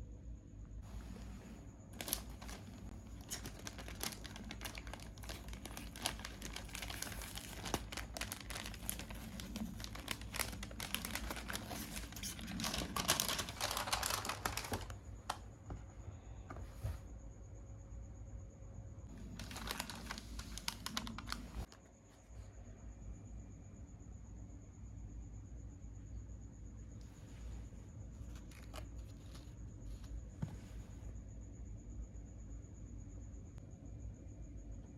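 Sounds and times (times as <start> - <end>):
packaging crinkling: 0.8 - 15.4, 19.1 - 21.7, 28.2 - 30.1.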